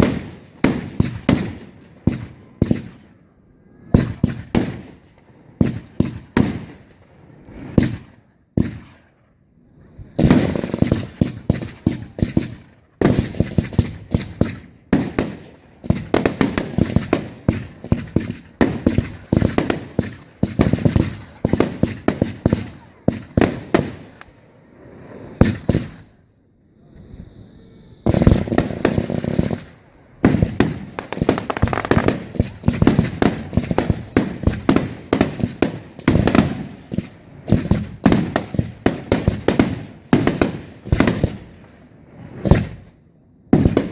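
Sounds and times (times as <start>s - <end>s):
fireworks bursts and crackling bangs: 0.0s - 43.9s.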